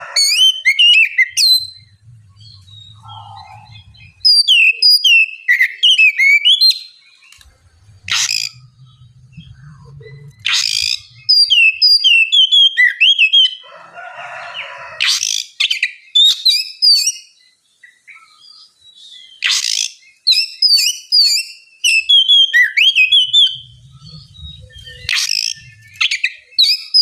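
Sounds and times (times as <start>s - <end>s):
harsh rasping bird call: 0.0s - 5.2s
bird whistling song: 0.0s - 13.6s, 15.0s - 27.0s.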